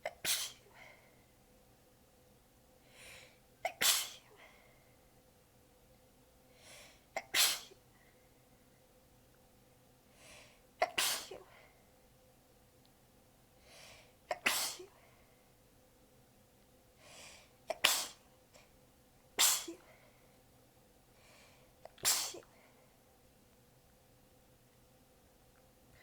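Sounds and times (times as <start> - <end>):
person sneezing: 0.0 - 0.7, 3.7 - 4.3, 7.2 - 7.8, 10.8 - 11.5, 14.3 - 14.9, 17.7 - 18.2, 19.4 - 19.9, 21.9 - 22.5.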